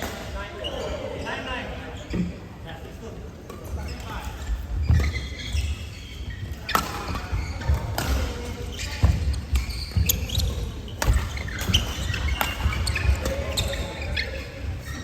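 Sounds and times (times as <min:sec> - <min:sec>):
shoes squeaking on court floor: 0:03.5 - 0:15.0.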